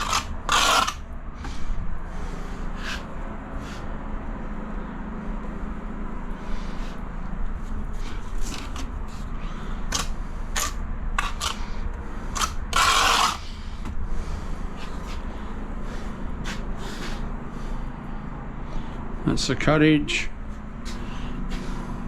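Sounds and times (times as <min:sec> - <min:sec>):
tile scrape: 0:00.0 - 0:01.0, 0:12.4 - 0:13.4
steady low hum: 0:00.0 - 0:22.0.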